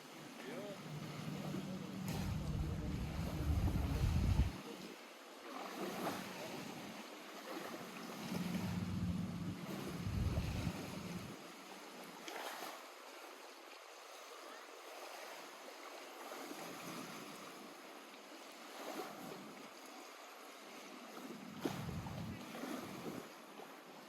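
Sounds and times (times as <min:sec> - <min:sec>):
lake water lapping: 0:00.0 - 0:24.0
soft water splashes: 0:00.0 - 0:24.0
low rumble: 0:00.8 - 0:04.6, 0:08.3 - 0:11.3, 0:21.7 - 0:22.4.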